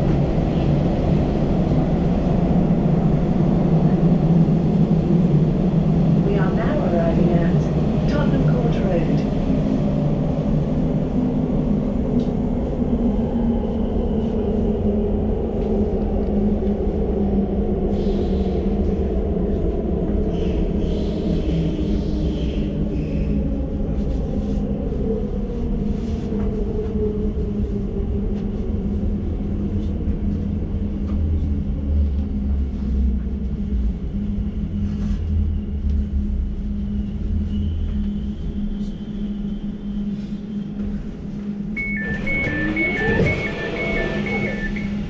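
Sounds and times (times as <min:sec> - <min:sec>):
train braking rumble and hum: 0:00.0 - 0:45.0
traction motor whine: 0:41.8 - 0:45.0
two-tone door beeping: 0:41.8 - 0:45.0.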